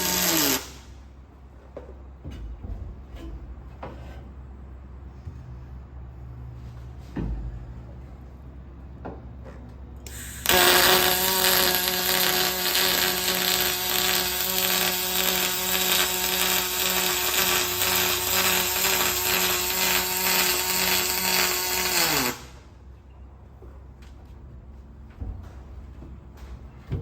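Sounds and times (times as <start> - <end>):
welding arc buzzing: 0.0 - 1.0, 10.1 - 22.7.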